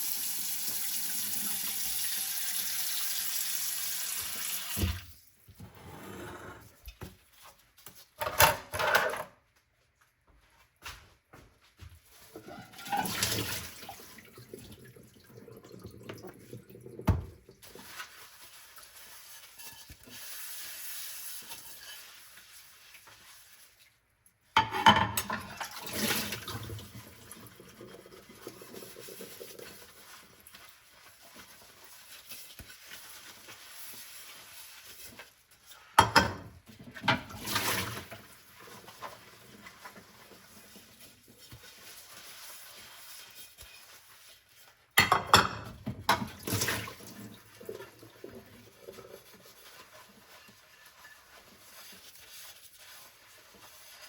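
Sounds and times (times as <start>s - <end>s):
tap water running: 0.0s - 5.7s, 12.4s - 17.9s, 24.6s - 34.3s, 36.0s - 44.3s, 45.0s - 52.1s
dishware knocking and clinking: 24.6s - 25.5s.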